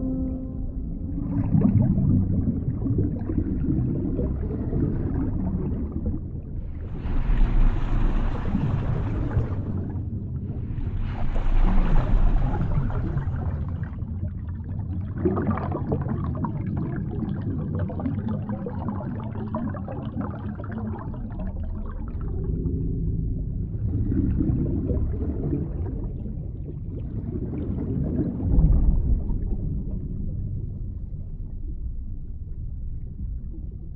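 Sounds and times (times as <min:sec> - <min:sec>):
muffled underwater rumbling and gurgling: 0:00.0 - 0:33.9.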